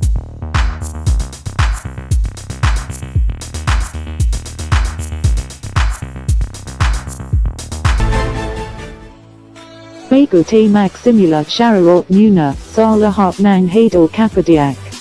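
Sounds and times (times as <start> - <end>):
electronic music with drum-machine beat: 0.0 - 8.1.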